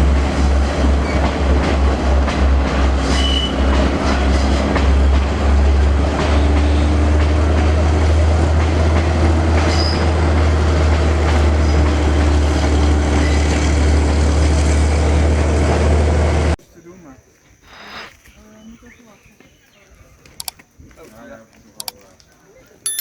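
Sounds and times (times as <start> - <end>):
train rumbling past: 0.0 - 16.6
train wheel squeal: 0.9 - 1.4, 3.0 - 4.8, 6.2 - 7.1, 9.6 - 10.2, 11.6 - 13.8.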